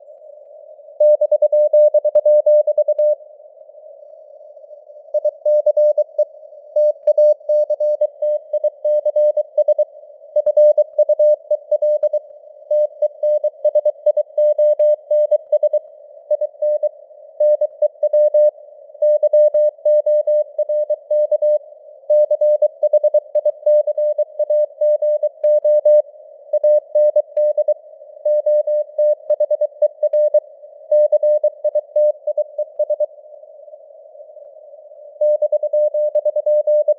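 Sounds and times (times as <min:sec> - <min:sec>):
faint radio noise hiss: 0:00.0 - 0:08.8, 0:26.0 - 0:36.9
morse code beeps: 0:10.4 - 0:12.2, 0:26.6 - 0:33.1, 0:35.2 - 0:36.9.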